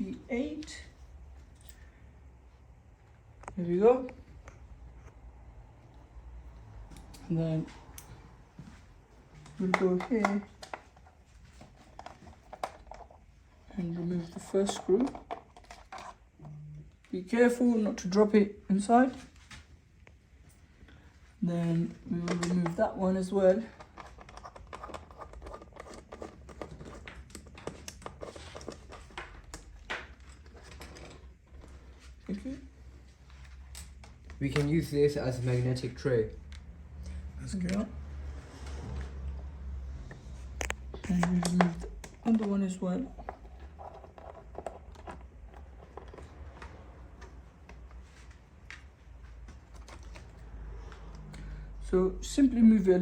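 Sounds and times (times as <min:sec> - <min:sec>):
screwdriver clicking and scraping: 0:23.8 - 0:31.3.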